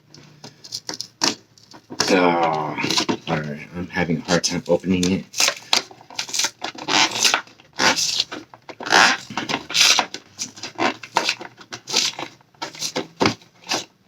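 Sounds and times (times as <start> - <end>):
packaging rustling and crinkling: 4.2 - 13.9.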